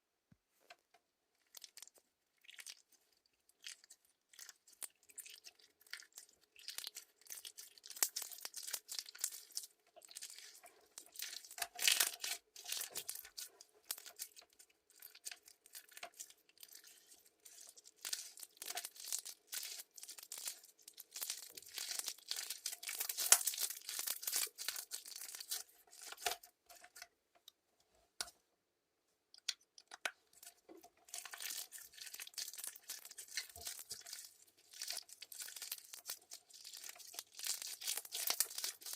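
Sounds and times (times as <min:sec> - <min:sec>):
slime squished by hand crackling: 0:34.8 - 0:38.9.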